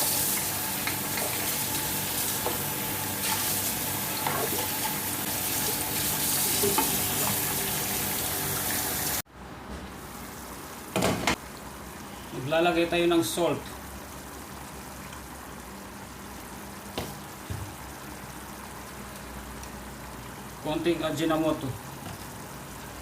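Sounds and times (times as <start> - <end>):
food sizzling in hot oil: 0.0 - 9.2.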